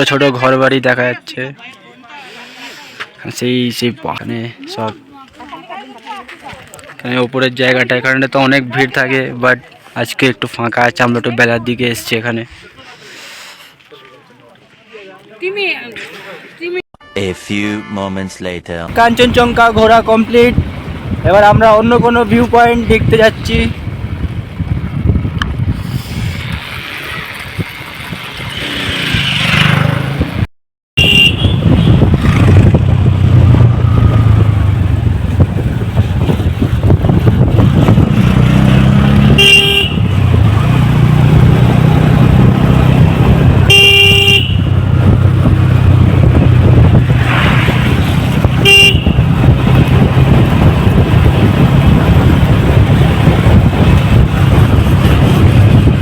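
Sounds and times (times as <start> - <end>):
vehicle horn short beeps: 31.0 - 32.0, 39.4 - 40.2, 43.7 - 44.8, 48.6 - 49.2
motorcycle engine running: 31.0 - 47.2, 47.8 - 56.0.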